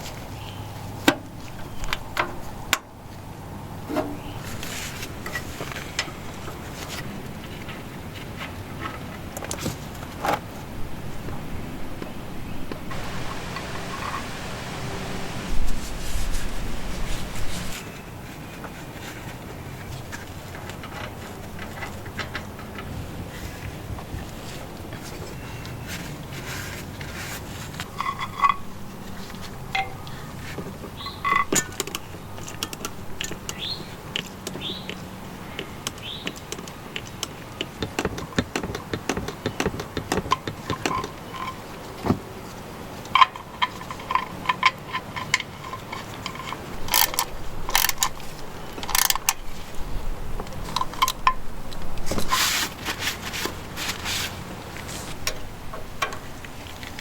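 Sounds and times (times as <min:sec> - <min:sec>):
hand tools and metal parts clinking: 0:03.9 - 0:10.4, 0:25.0 - 0:34.8, 0:43.0 - 0:49.8, 0:50.4 - 0:57.0.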